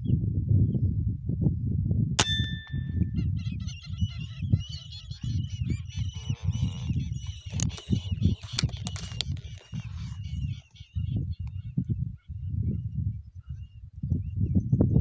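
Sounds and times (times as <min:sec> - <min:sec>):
sharp metallic ping: 0:02.2 - 0:03.3
ducks whistling calls: 0:03.2 - 0:11.2.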